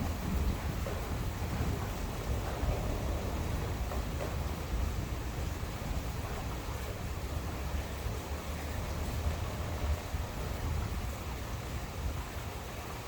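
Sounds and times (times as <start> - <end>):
low uneven rumble: 0.0 - 12.9
steady rain: 0.0 - 13.0.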